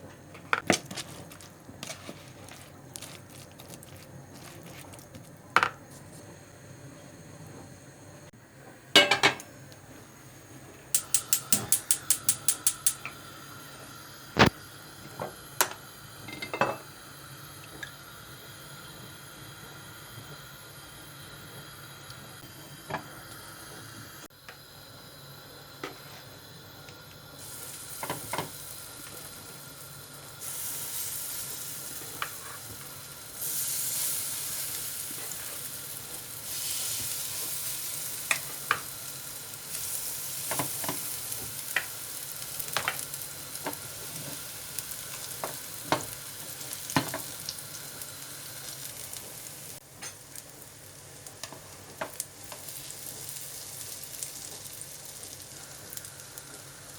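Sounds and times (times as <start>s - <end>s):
food sizzling in a pan: 0.6s - 6.7s, 9.0s - 56.9s.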